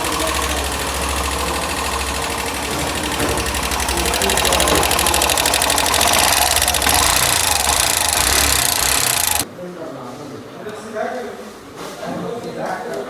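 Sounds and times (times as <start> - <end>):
motorcycle engine running: 0.0 - 9.4.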